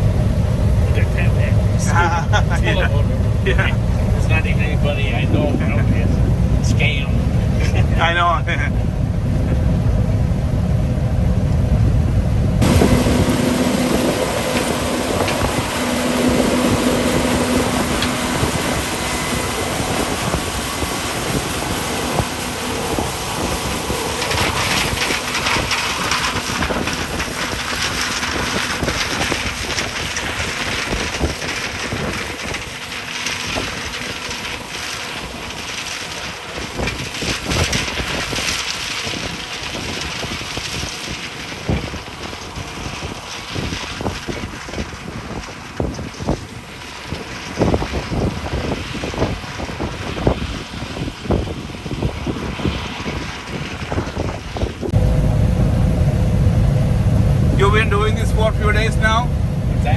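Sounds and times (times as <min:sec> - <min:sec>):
combine harvester droning: 0:00.0 - 0:59.9
mechanical rattling: 0:12.6 - 0:56.1.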